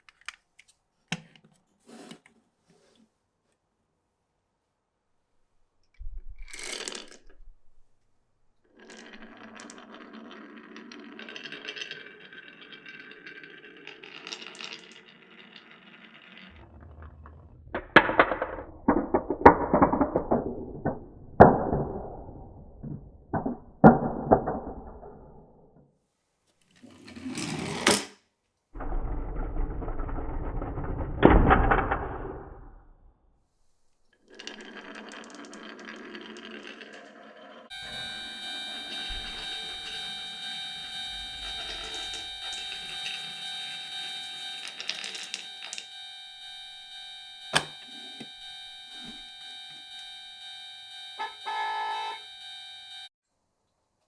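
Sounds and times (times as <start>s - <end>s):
marbles rolling on wood: 6.3s - 7.8s, 8.7s - 25.4s, 28.8s - 32.7s, 34.1s - 46.0s
marbles knocking and clacking: 8.7s - 25.4s, 34.3s - 38.2s, 41.7s - 45.9s.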